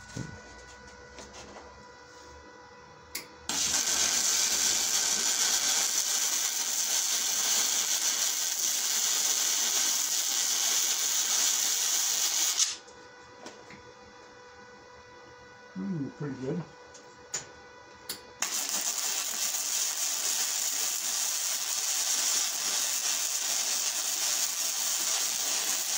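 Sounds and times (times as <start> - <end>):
welding arc hissing: 3.5 - 12.8, 18.4 - 25.9.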